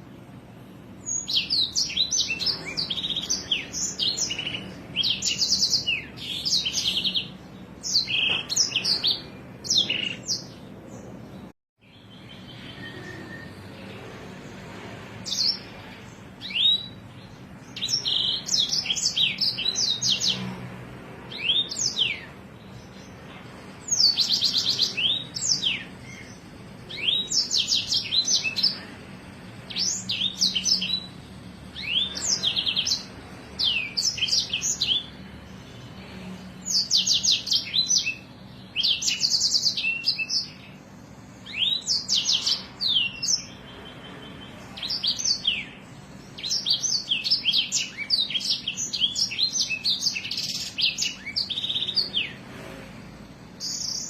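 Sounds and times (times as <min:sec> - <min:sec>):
songbird trilling: 0:01.0 - 0:11.0, 0:15.2 - 0:20.5, 0:23.8 - 0:35.8, 0:36.6 - 0:40.8, 0:41.4 - 0:52.4.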